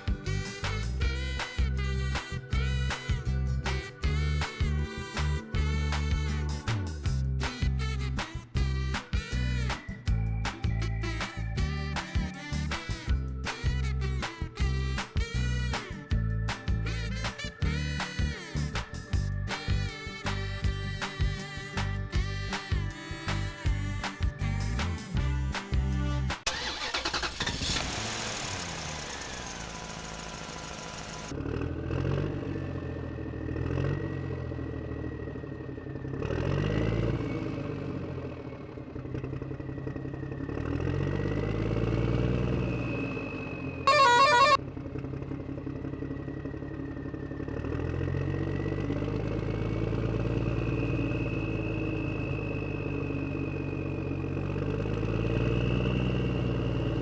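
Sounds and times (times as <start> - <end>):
short horn beep: 0.0 - 10.2, 10.8 - 27.2, 43.9 - 44.6
construction vehicle engine revving: 0.0 - 34.4, 36.2 - 38.0, 40.0 - 43.3, 47.5 - 57.0.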